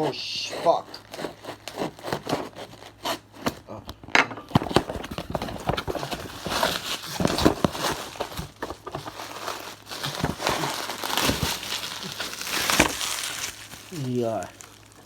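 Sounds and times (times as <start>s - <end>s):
plastic packaging crinkling: 4.5s - 15.0s.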